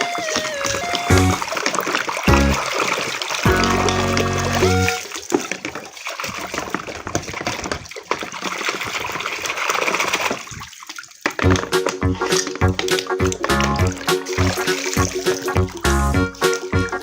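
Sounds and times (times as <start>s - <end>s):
background music: 0.0s - 1.5s, 2.3s - 2.6s, 3.5s - 5.0s, 11.4s - 17.0s
water running and splashing: 0.0s - 17.0s.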